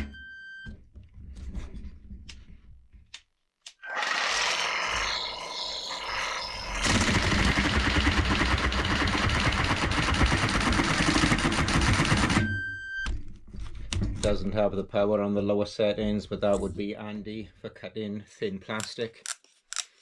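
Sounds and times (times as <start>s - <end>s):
cordless jigsaw cutting: 3.9s - 12.4s.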